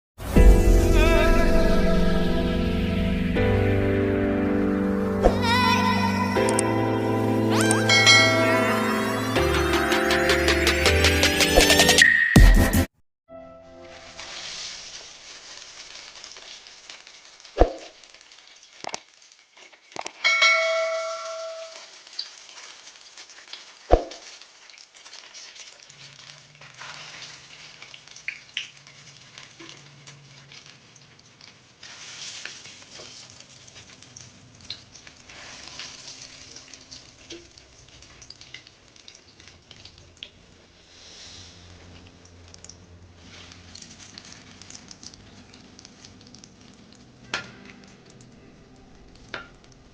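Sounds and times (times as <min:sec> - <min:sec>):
low hum: 0:00.2 - 0:09.5
frying sizzle: 0:00.2 - 0:12.0, 0:13.8 - 0:49.9
metal pan ringing when struck: 0:20.2 - 0:21.9.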